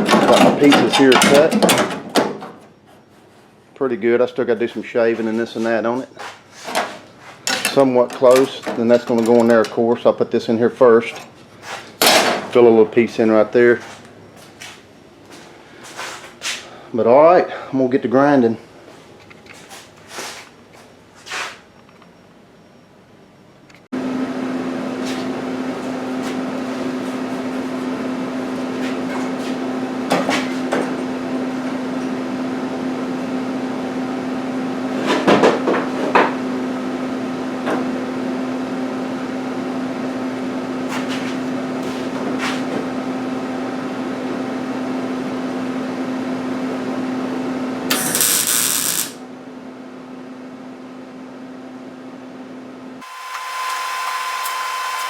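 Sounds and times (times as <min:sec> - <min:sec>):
electric grinder humming: 0:47.9 - 0:49.2, 0:53.0 - 0:55.0
grinding on metal: 0:48.0 - 0:49.2.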